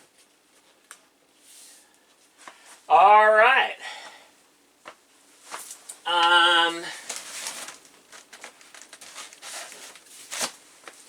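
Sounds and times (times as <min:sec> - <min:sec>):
person humming: 0:06.1 - 0:07.0.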